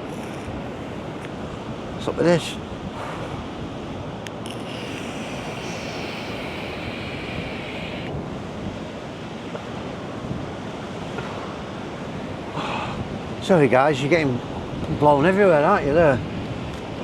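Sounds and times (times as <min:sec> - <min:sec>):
sea surf rushing: 0:00.0 - 0:17.0
wind buffeting microphone: 0:00.0 - 0:17.0
high hiss: 0:04.3 - 0:08.3.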